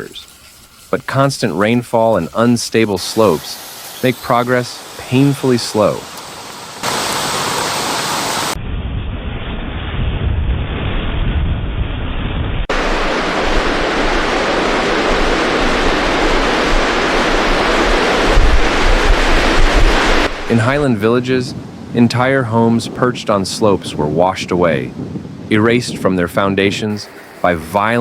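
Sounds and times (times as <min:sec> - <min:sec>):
rushing floodwater: 0:00.9 - 0:08.6, 0:12.7 - 0:21.4, 0:26.9 - 0:28.0
deep rumble: 0:08.6 - 0:20.9.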